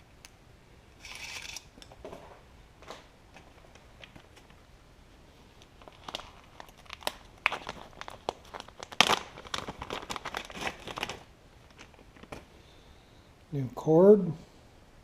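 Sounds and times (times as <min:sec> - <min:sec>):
plastic packaging crinkling: 0:05.5 - 0:12.5.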